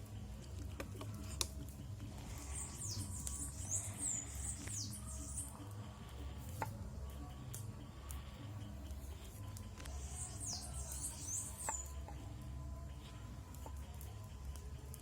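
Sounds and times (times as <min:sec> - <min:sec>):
small bird chirping: 0:02.1 - 0:05.8, 0:08.9 - 0:12.3.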